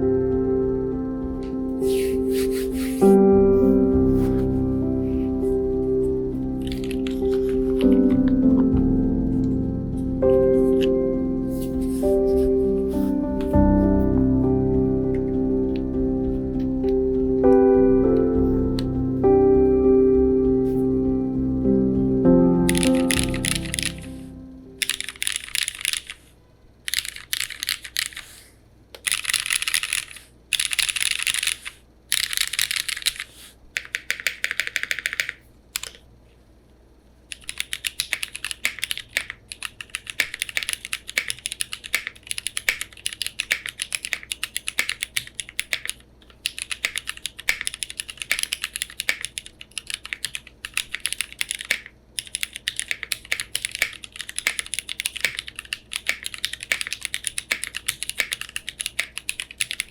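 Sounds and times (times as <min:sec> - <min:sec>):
typing on mechanical keyboard: 0:06.4 - 0:08.8, 0:22.7 - 0:24.2, 0:24.8 - 0:26.2, 0:26.8 - 0:28.4, 0:29.0 - 0:36.0, 0:37.3 - 0:59.9.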